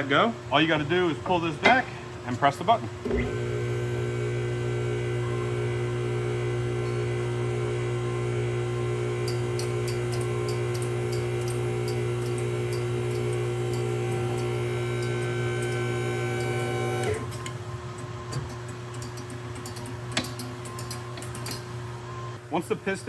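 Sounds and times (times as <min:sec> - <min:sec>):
hydraulic power unit humming: 0:00.0 - 0:23.0
light regular ticking: 0:09.2 - 0:15.8.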